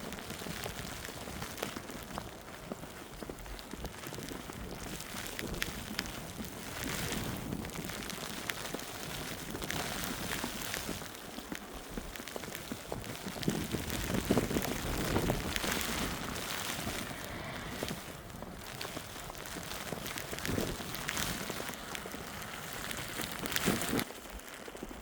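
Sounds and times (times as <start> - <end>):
footsteps in wet snow: 0.0 - 25.0
snowfall hiss: 0.0 - 25.0.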